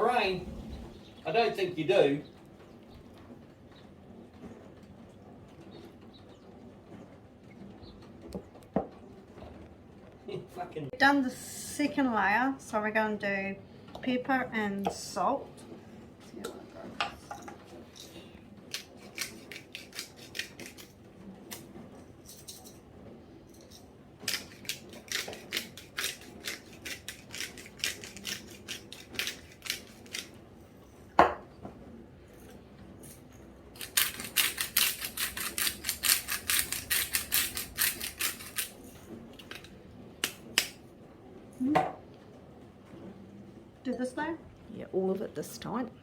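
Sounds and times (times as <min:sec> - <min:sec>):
pepper grinder gritty clicking: 0:18.7 - 0:20.9, 0:24.3 - 0:30.4, 0:33.8 - 0:38.8, 0:39.4 - 0:40.8.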